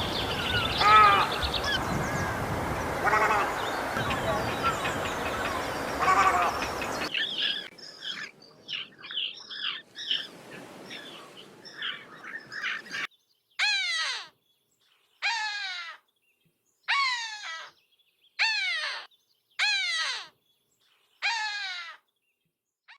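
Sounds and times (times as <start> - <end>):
small birds chirping: 0.0 - 22.9
bird giving loud caw calls: 0.4 - 2.4, 3.0 - 7.6, 21.2 - 22.0.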